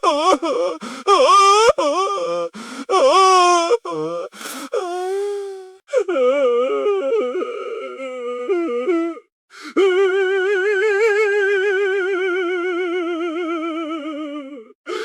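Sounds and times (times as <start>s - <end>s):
man sobbing and wailing: 0.0s - 9.2s
sharp gasping breath: 0.8s - 1.1s, 2.5s - 2.9s, 3.9s - 5.8s.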